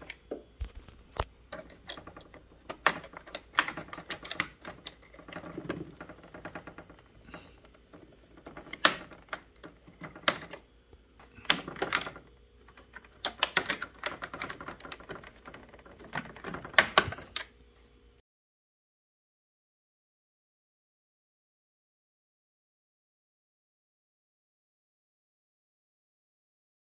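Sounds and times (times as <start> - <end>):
typing on keys: 1.5 - 7.0, 11.3 - 17.1.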